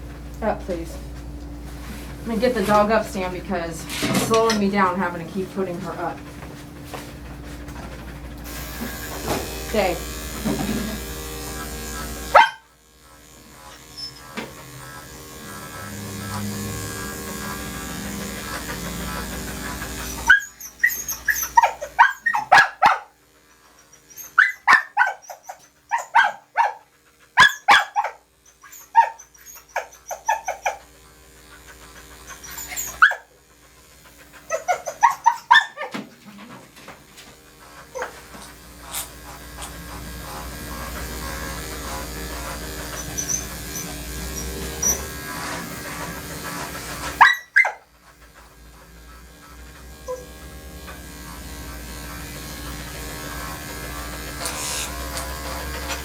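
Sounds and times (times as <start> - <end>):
electric clippers running: 0.0 - 56.0
dog barking: 12.3 - 12.7, 20.2 - 23.2, 24.3 - 30.8, 32.6 - 33.3, 34.5 - 36.1, 37.9 - 38.2, 47.2 - 47.8.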